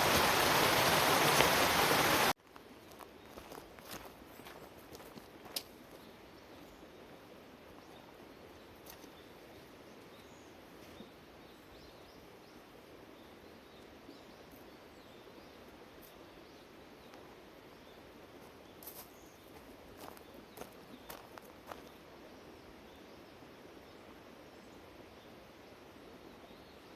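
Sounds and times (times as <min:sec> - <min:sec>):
outdoor background noise: 0:00.0 - 0:26.9.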